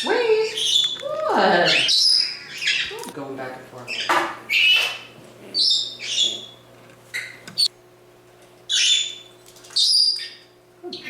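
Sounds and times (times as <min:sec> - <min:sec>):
parrot squawking: 0:00.4 - 0:03.0, 0:03.9 - 0:07.4, 0:08.7 - 0:11.0.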